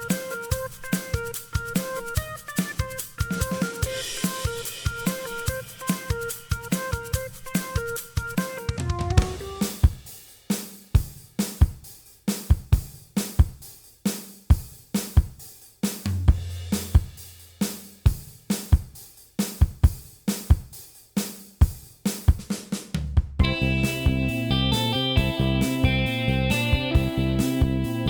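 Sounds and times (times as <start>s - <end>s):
drum kit beat: 0.0s - 28.0s
low bass note: 23.4s - 28.0s.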